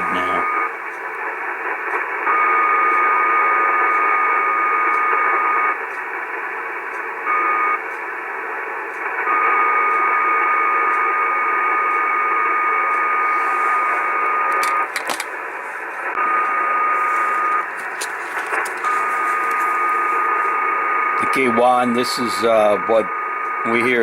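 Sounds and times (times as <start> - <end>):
radio band hiss: 0.0 - 24.0
steady buzzing tone: 18.6 - 24.0.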